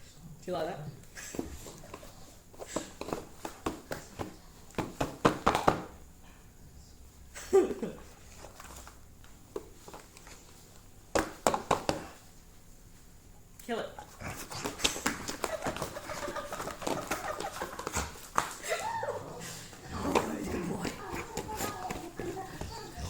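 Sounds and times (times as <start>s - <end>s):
person and dog play-fighting: 14.0s - 23.0s.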